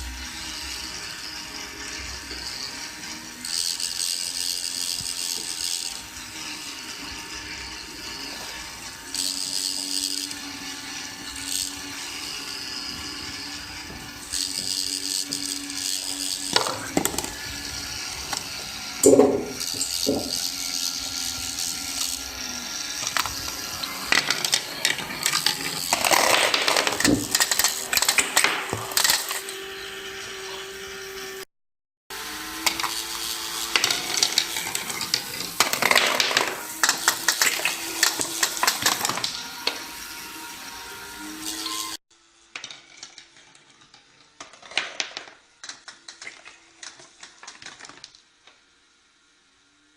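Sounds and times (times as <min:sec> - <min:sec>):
motor-like hum: 0:00.0 - 0:31.5, 0:32.1 - 0:49.9
small parts clicking and rattling: 0:00.5 - 0:29.6, 0:32.4 - 0:40.4, 0:41.4 - 0:48.7
small hard parts clattering: 0:18.3 - 0:20.5, 0:22.9 - 0:29.5, 0:33.6 - 0:40.0.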